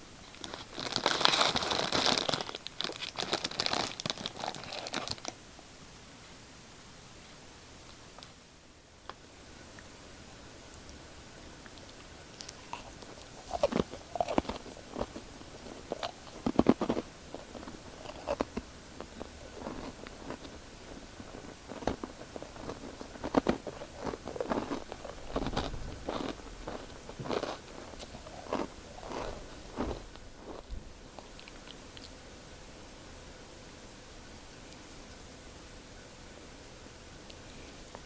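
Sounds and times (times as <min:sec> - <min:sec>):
crunchy bites and chewing: 0:11.6 - 0:32.2.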